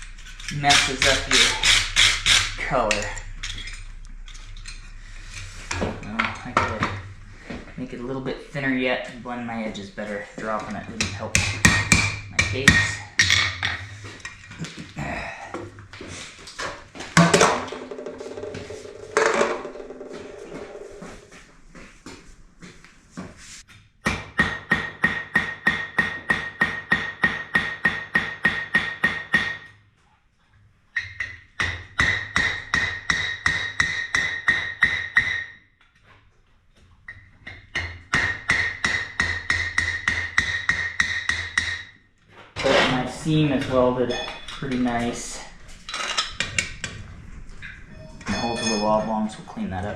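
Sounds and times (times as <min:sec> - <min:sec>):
hammer beating iron on anvil: 0:00.0 - 0:07.6, 0:09.7 - 0:13.9, 0:24.0 - 0:29.7, 0:31.6 - 0:35.5, 0:37.5 - 0:41.9, 0:48.2 - 0:49.2
anvil clang with ringing: 0:44.0 - 0:45.4, 0:48.3 - 0:49.4.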